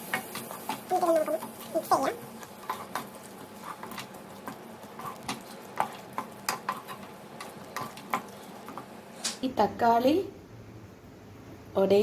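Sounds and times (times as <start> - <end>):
utensil scraping a pan: 0.0 - 8.8
light sizzle: 0.0 - 12.0.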